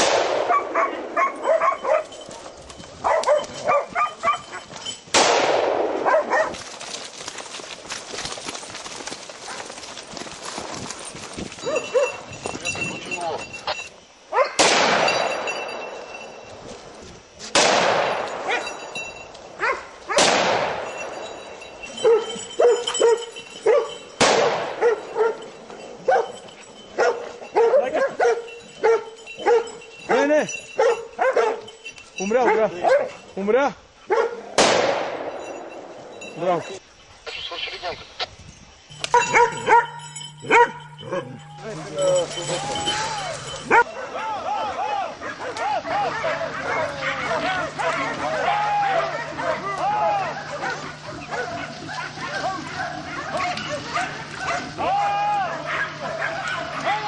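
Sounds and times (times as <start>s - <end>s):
echoing gunshots: 0.0s - 1.2s, 5.1s - 6.2s, 14.6s - 15.5s, 17.5s - 18.6s, 20.2s - 21.2s, 24.2s - 24.8s, 34.6s - 35.9s
dogs barking: 0.4s - 2.3s, 3.0s - 4.8s, 6.0s - 6.6s, 11.6s - 12.4s, 14.3s - 14.6s, 18.4s - 18.8s, 19.6s - 20.4s, 21.5s - 33.3s, 34.0s - 34.6s, 38.9s - 57.0s
dogs barking in short yelps: 3.0s - 4.7s, 6.1s - 6.6s, 45.2s - 57.0s.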